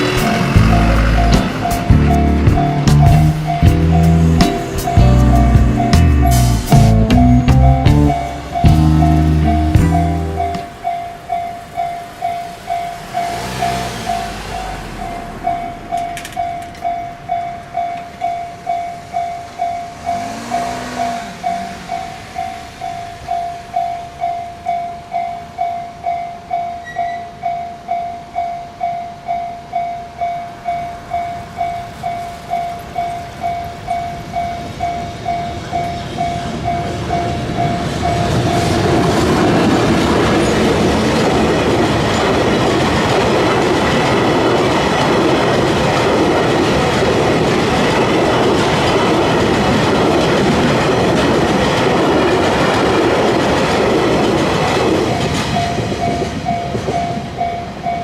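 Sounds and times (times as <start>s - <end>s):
level crossing bell ringing: 0.0s - 38.9s
train wheels on rails: 0.0s - 58.0s.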